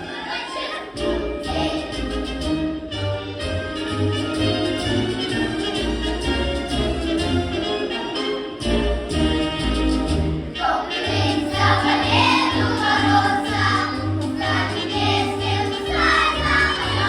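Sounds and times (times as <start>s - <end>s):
children's choir singing: 0.0s - 2.8s, 10.5s - 17.0s
orchestral accompaniment: 0.0s - 17.0s.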